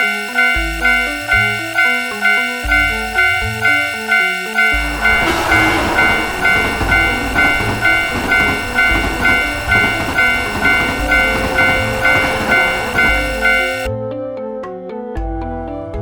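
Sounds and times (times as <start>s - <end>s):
railroad crossing alarm ringing: 0.0s - 13.9s
train rumbling and rattling: 4.7s - 13.9s.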